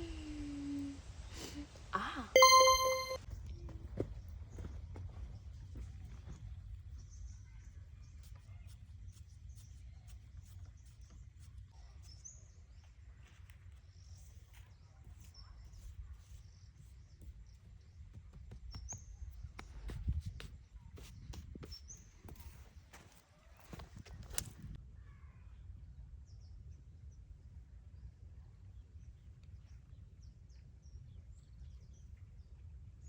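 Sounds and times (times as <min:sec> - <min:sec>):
high bird chirps: 0:02.4 - 0:03.2.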